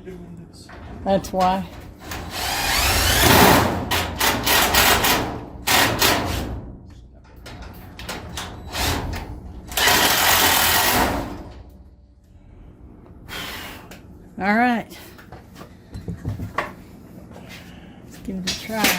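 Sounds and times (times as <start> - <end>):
power drill driving screws into metal: 2.0 - 6.4, 8.7 - 11.4.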